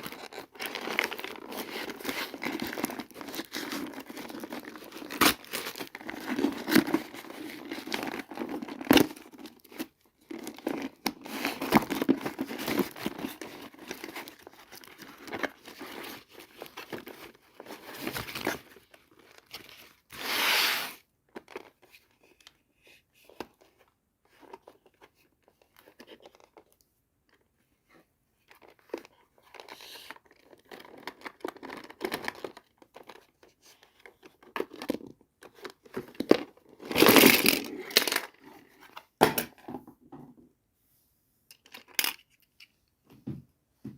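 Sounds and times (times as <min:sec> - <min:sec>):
packaging tearing: 0:00.0 - 0:09.8
packaging crinkling: 0:00.0 - 0:20.0, 0:35.6 - 0:38.9.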